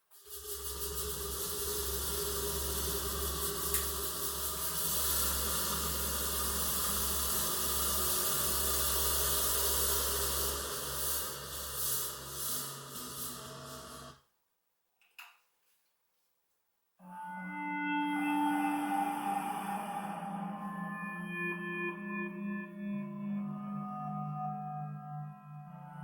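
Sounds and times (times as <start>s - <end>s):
synthesizer airy hiss and drone: 0.1s - 14.2s, 17.9s - 23.6s.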